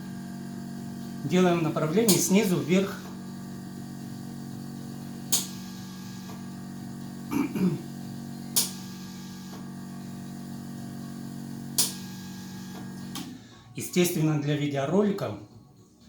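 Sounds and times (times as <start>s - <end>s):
low machine hum: 0.0s - 13.9s
suction cup pops: 11.8s - 12.0s.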